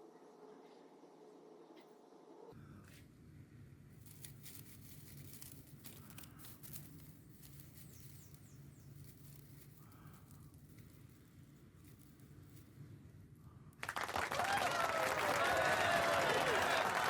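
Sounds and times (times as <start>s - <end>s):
dry tinder crackling: 3.9s - 13.3s.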